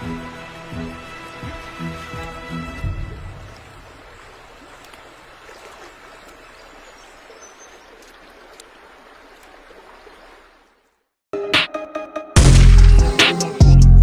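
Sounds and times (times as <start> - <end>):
waterfall running over rocks: 0.0 - 7.4.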